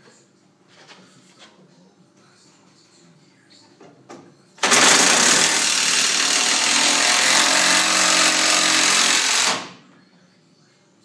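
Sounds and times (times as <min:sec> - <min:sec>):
power tool running: 0:04.6 - 0:09.8.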